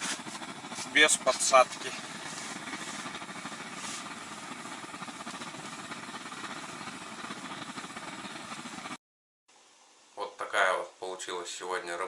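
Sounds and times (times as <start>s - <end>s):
blowtorch hissing: 0.0s - 9.0s.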